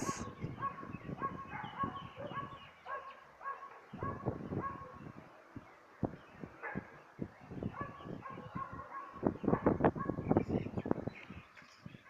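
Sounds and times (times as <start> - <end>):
faint dog barking: 0.0 - 5.0, 6.6 - 7.0, 7.7 - 10.3.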